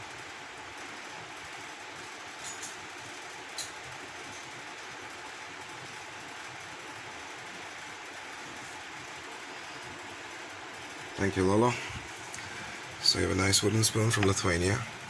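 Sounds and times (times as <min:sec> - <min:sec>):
steady background hiss: 0:07.6 - 0:15.0.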